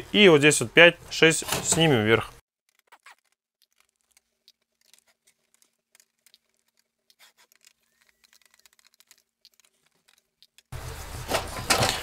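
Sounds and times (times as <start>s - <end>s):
plastic parts clicking and tapping: 2.7s - 10.7s.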